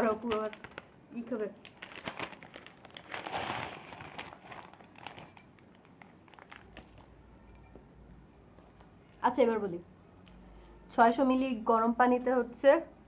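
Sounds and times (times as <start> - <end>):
plastic packaging crinkling: 0.0 - 7.2.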